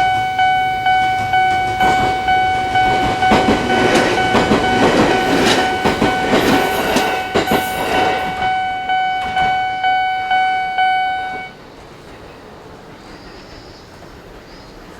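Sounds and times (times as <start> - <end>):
train wheels clattering: 0.0 - 9.7
level-crossing alarm dinging: 0.0 - 11.6.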